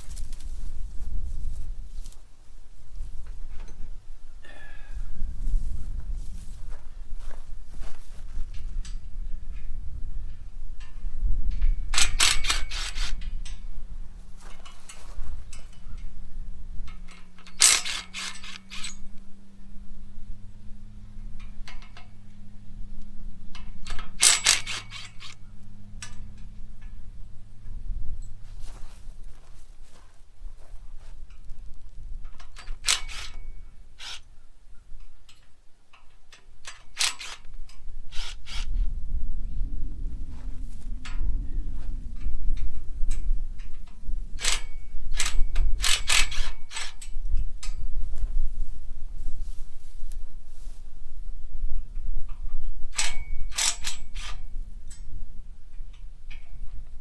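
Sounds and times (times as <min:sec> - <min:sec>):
steady low hum: 0:00.0 - 0:57.0
metallic clicks and clatters: 0:11.5 - 0:13.7, 0:16.8 - 0:19.2, 0:21.4 - 0:22.4, 0:23.5 - 0:27.0, 0:32.2 - 0:34.2, 0:35.0 - 0:38.7, 0:42.2 - 0:47.8, 0:52.3 - 0:55.1
metal parts clanking and scraping: 0:11.5 - 0:16.2, 0:16.8 - 0:19.2, 0:21.2 - 0:22.6, 0:23.4 - 0:27.0, 0:32.2 - 0:34.3, 0:35.3 - 0:38.8, 0:42.2 - 0:47.8, 0:52.9 - 0:55.1
low rumble: 0:18.3 - 0:32.6, 0:37.4 - 0:45.8.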